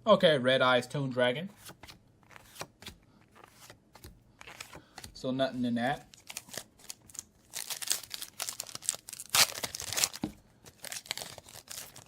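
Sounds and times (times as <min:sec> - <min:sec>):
foil wrapper crinkling and tearing: 0:06.0 - 0:12.0.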